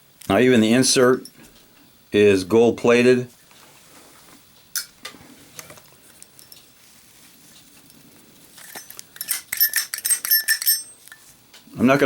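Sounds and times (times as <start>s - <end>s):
sharp metallic clicks and clinks: 6.3s - 6.7s, 8.6s - 11.3s.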